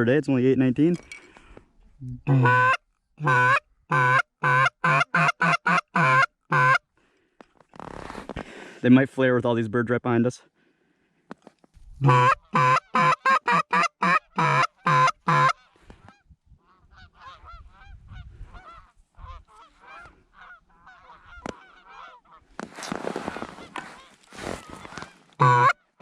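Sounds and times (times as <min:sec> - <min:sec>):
goose call honks: 0:02.2 - 0:06.8, 0:12.0 - 0:22.4, 0:24.8 - 0:26.0
flock of geese honking: 0:02.3 - 0:06.8, 0:12.0 - 0:22.6, 0:23.2 - 0:26.0.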